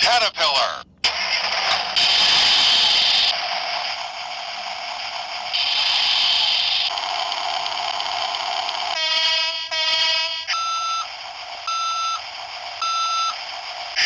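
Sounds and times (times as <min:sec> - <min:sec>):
buzzy ringtone tones: 0:05.6 - 0:07.0
short electronic beeps: 0:10.5 - 0:11.1, 0:11.7 - 0:12.2, 0:12.8 - 0:13.4.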